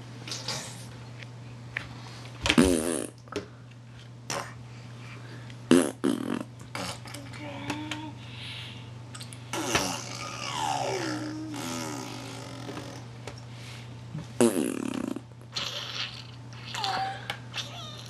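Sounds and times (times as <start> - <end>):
baby blowing raspberry: 4.3 - 4.6, 5.7 - 7.2, 9.5 - 13.1, 14.4 - 16.9.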